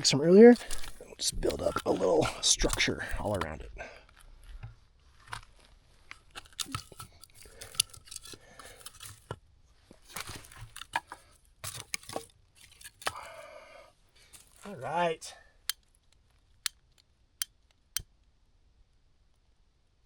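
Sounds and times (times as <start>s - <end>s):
rustling and crunching: 0.0s - 13.4s, 14.2s - 14.8s.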